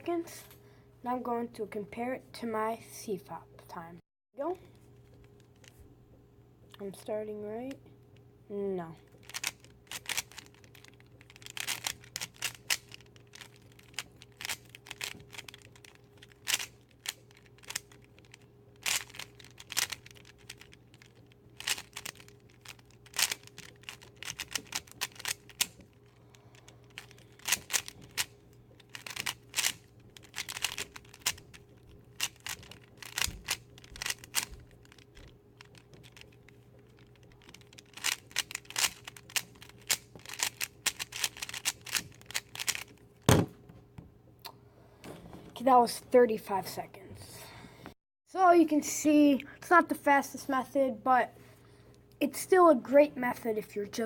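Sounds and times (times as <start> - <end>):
puzzle cube clicking and rattling: 5.0 - 5.8, 9.1 - 43.3.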